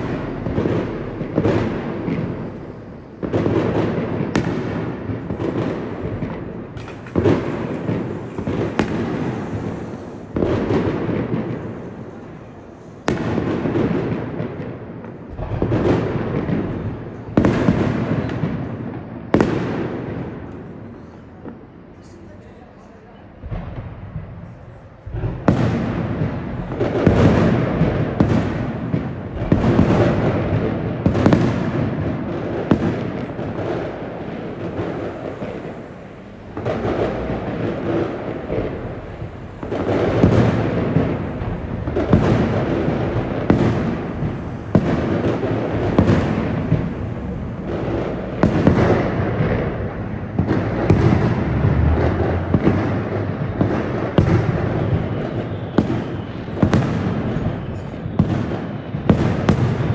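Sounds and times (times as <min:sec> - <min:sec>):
firework shells bursting: 0:00.0 - 0:14.2, 0:33.0 - 0:58.1.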